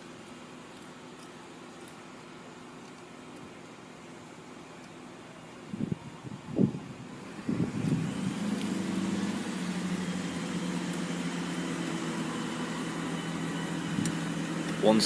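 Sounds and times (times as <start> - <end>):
train diesel engines humming: 7.2 - 15.0.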